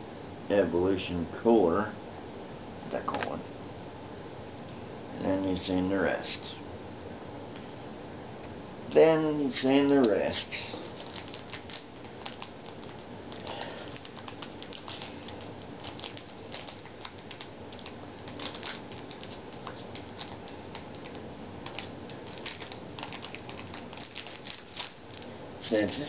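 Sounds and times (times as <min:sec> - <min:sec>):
card pack packaging crinkling: 0:10.8 - 0:26.0.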